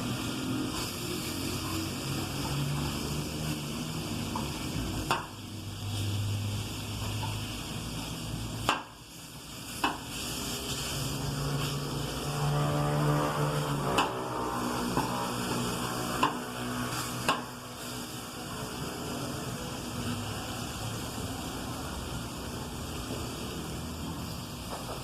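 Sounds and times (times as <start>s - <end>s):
food sizzling in a frying pan: 0.0s - 25.0s.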